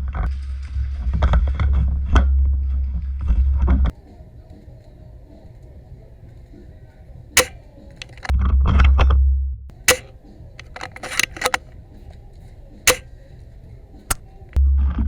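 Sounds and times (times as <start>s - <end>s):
airsoft gun shots: 7.4s - 8.3s, 9.9s - 11.6s
quick clicks: 7.4s - 8.3s, 9.9s - 11.6s.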